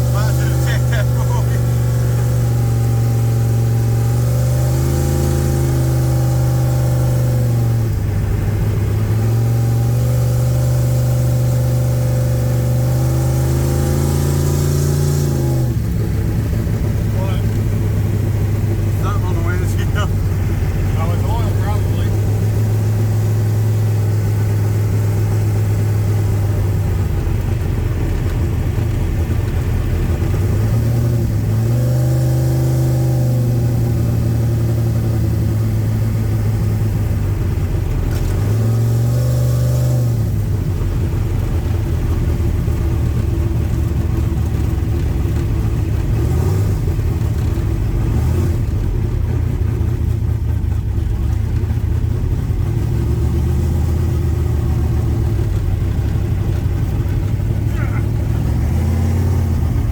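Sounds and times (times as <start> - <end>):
car engine revving: 0.0 - 59.9.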